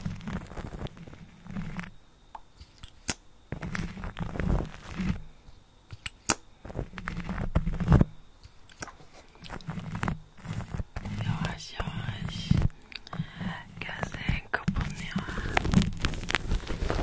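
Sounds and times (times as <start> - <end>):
lipstick scraping on microphone: 8.7 - 13.1, 13.7 - 17.0.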